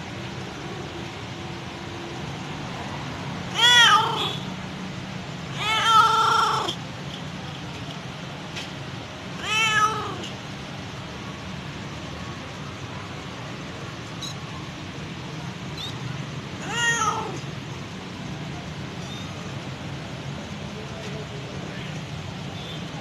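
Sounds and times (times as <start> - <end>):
cat meowing: 3.5 - 4.5, 5.5 - 6.8, 9.4 - 10.4, 16.6 - 17.5.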